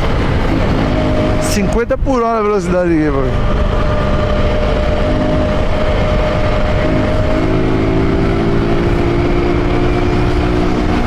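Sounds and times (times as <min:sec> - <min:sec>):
motorcycle engine running: 0:00.0 - 0:02.0, 0:02.6 - 0:11.0.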